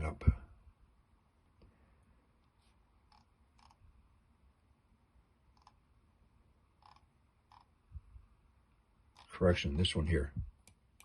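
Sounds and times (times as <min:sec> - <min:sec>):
faint computer mouse clicks: 0:05.5 - 0:05.8.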